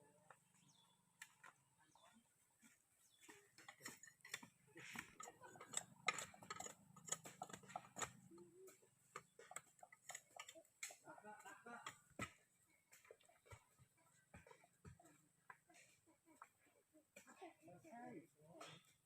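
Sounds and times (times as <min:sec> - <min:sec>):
faint irregular clicks: 0:03.2 - 0:17.4.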